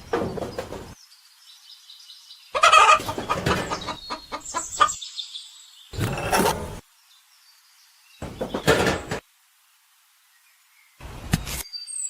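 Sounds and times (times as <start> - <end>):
chickens clucking: 2.6 - 5.0.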